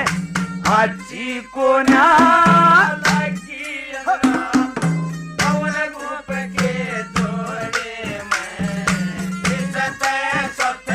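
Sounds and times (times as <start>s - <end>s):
drum strokes: 1.8s - 3.4s, 4.2s - 10.9s.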